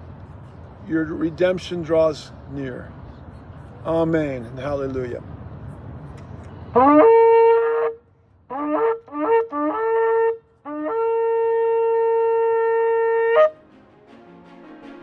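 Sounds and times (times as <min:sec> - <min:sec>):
ram's horn blasts: 0:06.8 - 0:15.0.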